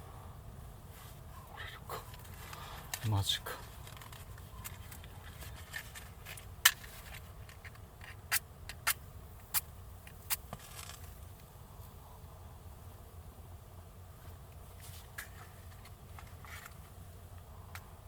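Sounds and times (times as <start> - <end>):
faint low background hum: 0.0 - 18.0.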